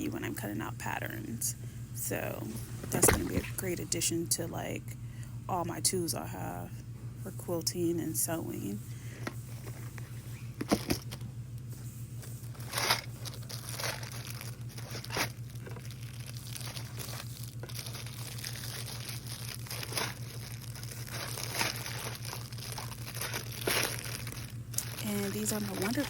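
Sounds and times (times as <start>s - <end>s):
steady low hum: 0.0s - 26.0s
plastic packaging crinkling: 12.2s - 26.0s.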